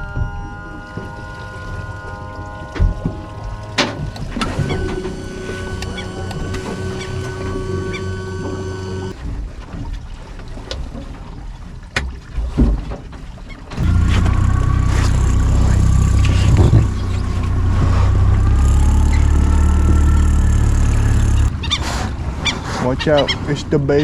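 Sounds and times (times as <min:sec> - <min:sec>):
knocks and clicks: 0:00.0 - 0:09.2
boat engine low hum: 0:00.0 - 0:24.0.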